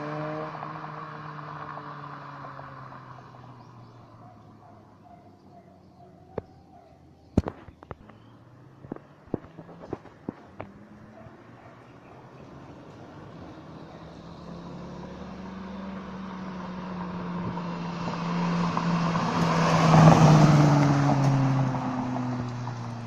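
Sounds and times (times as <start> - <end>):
car driving past: 0.0 - 4.7, 9.4 - 23.0.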